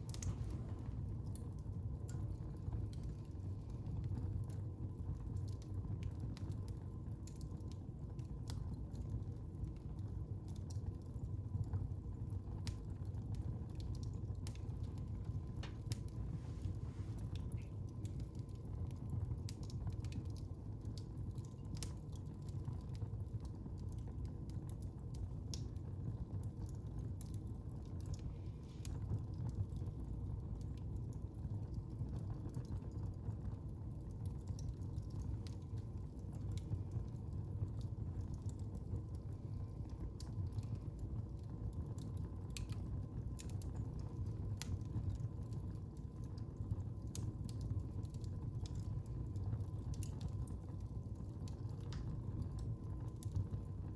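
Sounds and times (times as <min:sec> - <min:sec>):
sharp pops from fire: 0:00.0 - 0:01.5, 0:15.4 - 0:18.3
low rumble of flames: 0:00.0 - 0:53.9
wood fire crackling: 0:00.0 - 0:53.9.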